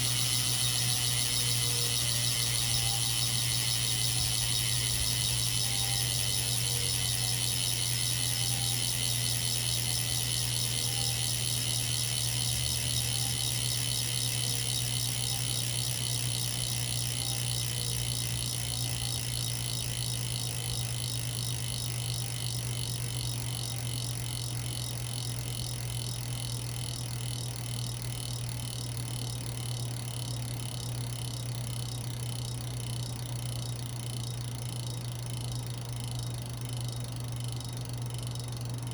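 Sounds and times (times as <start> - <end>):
bicycle freehub clicking: 0.0 - 38.9
steady low hum: 0.0 - 38.9.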